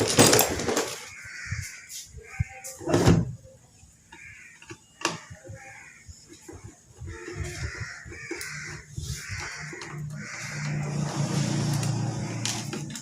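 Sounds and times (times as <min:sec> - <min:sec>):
tools and parts clicking and knocking: 0:00.0 - 0:01.1, 0:06.3 - 0:13.0.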